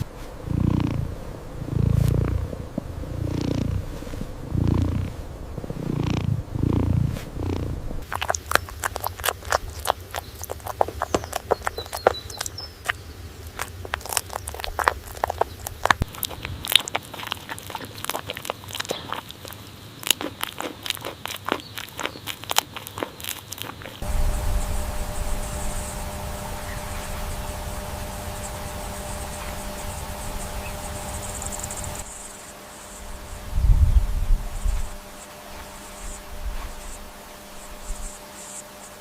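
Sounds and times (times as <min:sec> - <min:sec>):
animal purring: 0:00.0 - 0:39.0
crisp clicks and crunches: 0:08.0 - 0:24.0.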